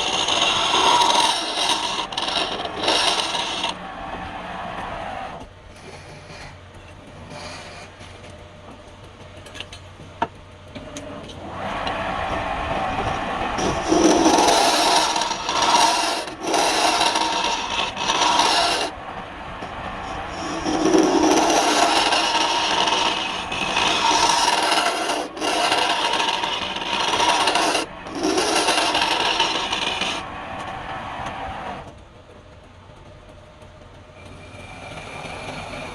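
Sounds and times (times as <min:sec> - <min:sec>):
tool scraping spinning wood: 0:00.0 - 0:03.8, 0:05.7 - 0:08.2, 0:11.5 - 0:30.8.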